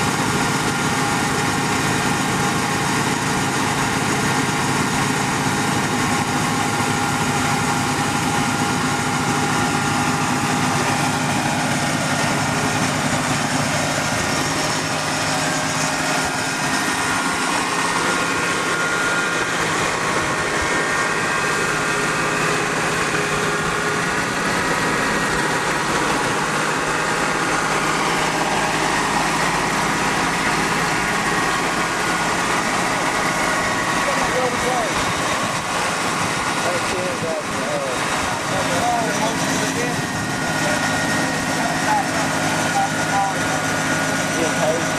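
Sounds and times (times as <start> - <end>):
engine humming and whining: 0.0 - 44.9.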